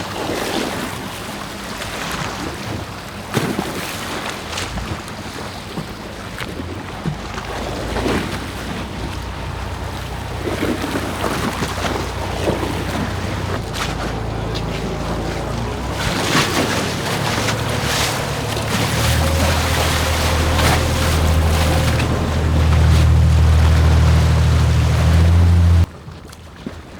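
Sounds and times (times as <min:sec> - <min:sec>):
wind and water rushing: 0:06.5 - 0:25.9
low engine hum: 0:07.2 - 0:25.9.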